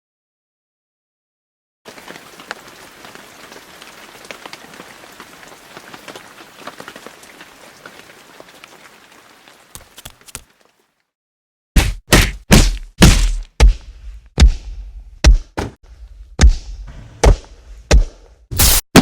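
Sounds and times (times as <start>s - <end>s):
rain on a hard surface: 1.9s - 11.0s
dull thuds: 11.8s - 15.8s.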